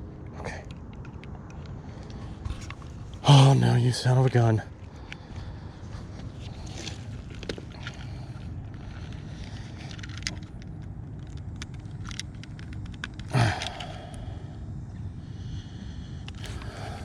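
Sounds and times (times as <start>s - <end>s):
steady low rumble: 0.0s - 17.0s
handling clicks: 7.0s - 14.2s.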